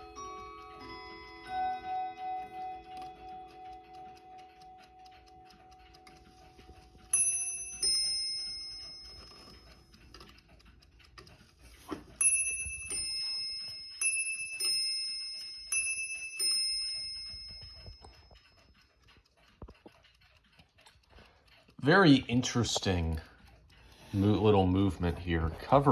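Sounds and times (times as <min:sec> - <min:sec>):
mantel clock striking two bells: 0:00.0 - 0:04.2, 0:07.1 - 0:09.5, 0:12.2 - 0:18.0
clock click: 0:00.0 - 0:25.9
clock ticking softly: 0:00.0 - 0:25.9.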